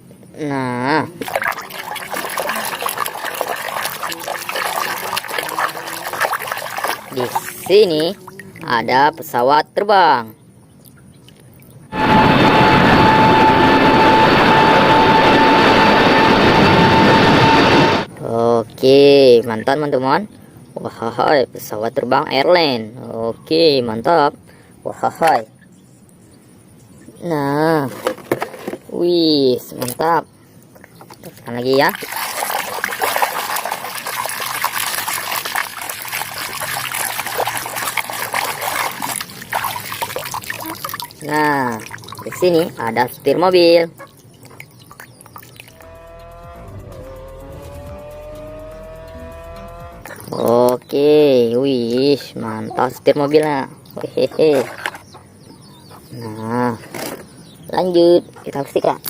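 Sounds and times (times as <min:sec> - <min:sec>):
water splashing and trickling: 0:00.5 - 0:09.4, 0:29.6 - 0:50.8
crackles and drips: 0:01.2 - 0:08.7, 0:30.8 - 0:43.3, 0:43.9 - 0:46.0
jet engine rush and whine: 0:11.9 - 0:18.1, 0:45.7 - 0:50.2.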